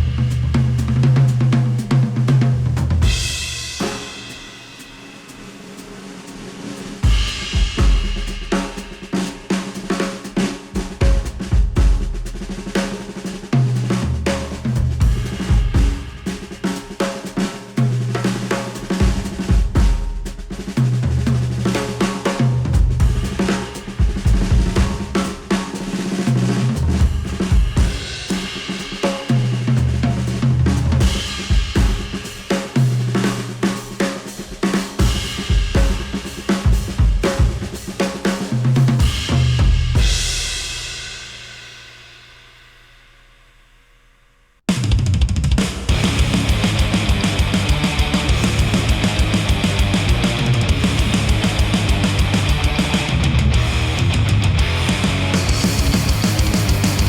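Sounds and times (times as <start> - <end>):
drum kit: 0.0 - 57.0
rock music with drums and guitar: 22.2 - 25.9, 33.7 - 38.4, 44.9 - 57.0
bass line: 45.9 - 57.0.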